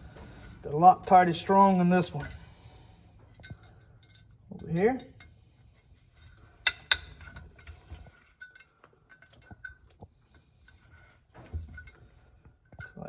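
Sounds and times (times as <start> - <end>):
metallic clinks of hand tools: 3.3 - 10.9.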